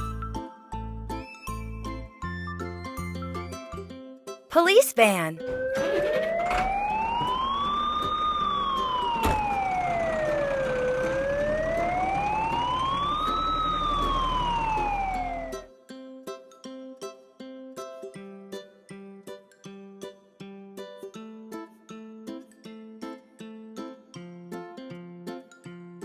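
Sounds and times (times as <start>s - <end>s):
bouncy children's music: 0.0s - 5.9s
police siren wailing: 5.4s - 15.7s.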